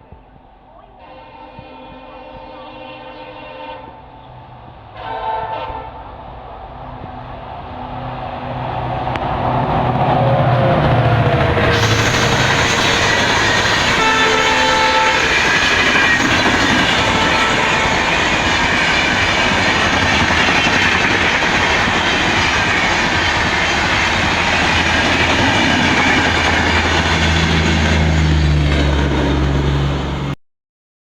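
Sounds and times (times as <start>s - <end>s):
train horn: 0.0s - 6.2s, 11.6s - 18.4s
train rushing past: 0.0s - 30.4s.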